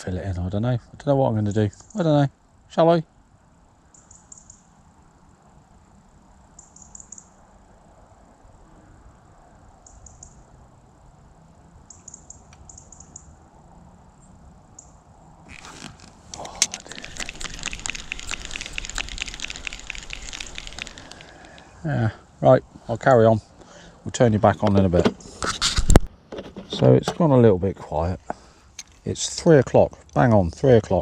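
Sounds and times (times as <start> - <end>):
dense crackling rustle: 15.5 - 22.1.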